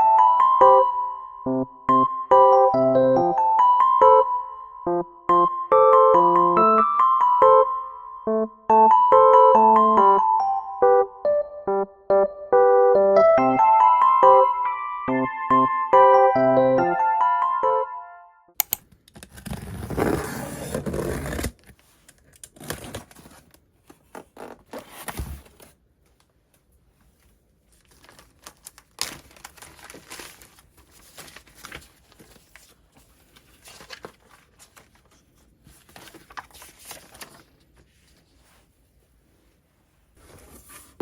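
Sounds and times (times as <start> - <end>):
packaging rustling and tearing: 27.7 - 37.6.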